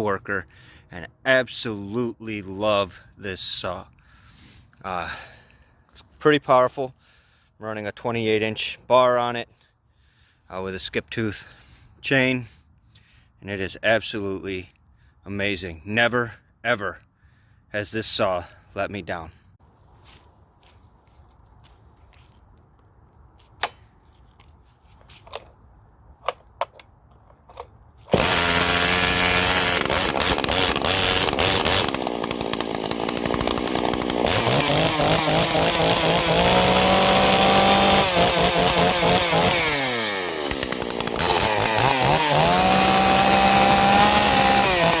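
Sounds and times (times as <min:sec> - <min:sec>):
chainsaw revving: 0:28.0 - 0:45.0.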